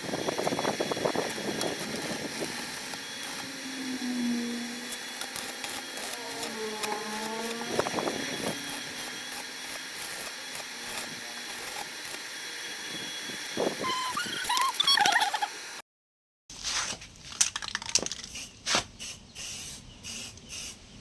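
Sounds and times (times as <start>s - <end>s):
motor humming: 0.0s - 15.8s.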